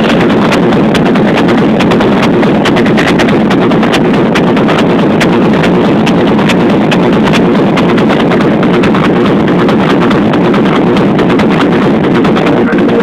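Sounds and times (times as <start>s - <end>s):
loud music through car speakers: 0.0s - 13.0s.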